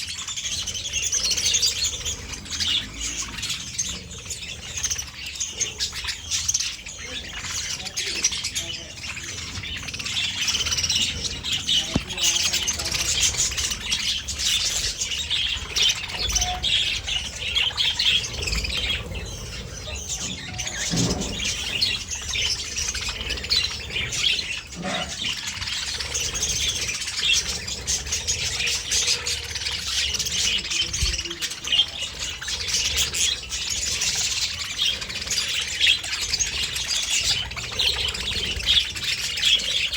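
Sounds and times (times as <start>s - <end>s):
budgerigars chattering and squawking: 0.0s - 39.9s.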